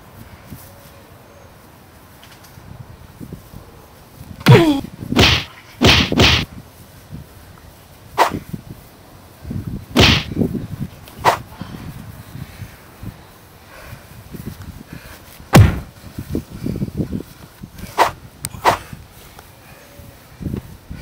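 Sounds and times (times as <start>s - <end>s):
whip-crack and swish strikes: 4.5s - 6.5s, 8.2s - 8.5s, 10.0s - 10.4s, 11.1s - 11.5s, 15.5s - 15.9s, 17.9s - 18.9s.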